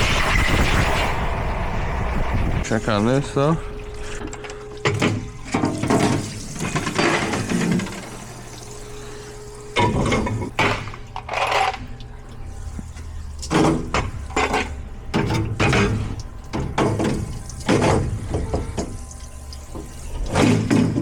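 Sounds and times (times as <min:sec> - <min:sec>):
pump humming: 0:00.0 - 0:21.0
metal parts clattering: 0:11.2 - 0:11.9.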